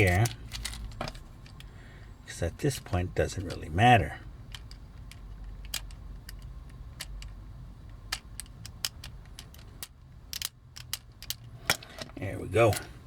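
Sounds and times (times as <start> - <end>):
plastic toy parts clicking: 0.0 - 1.7, 4.5 - 12.1.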